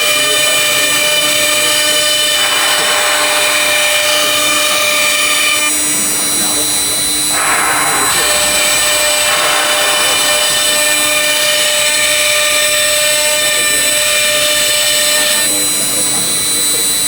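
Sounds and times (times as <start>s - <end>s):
cnc spindle high whine: 0.0s - 17.0s
router bit cutting workpiece: 0.0s - 17.0s.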